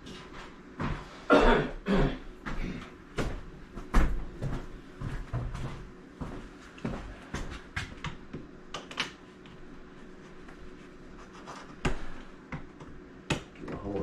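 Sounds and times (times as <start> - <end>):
person coughing: 1.3 - 2.8.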